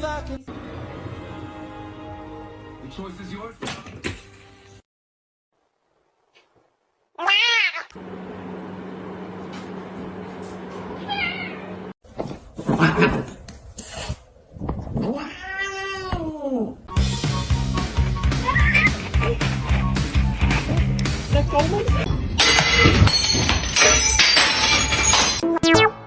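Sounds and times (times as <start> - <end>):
cat meowing: 7.2 - 7.9, 15.1 - 16.2.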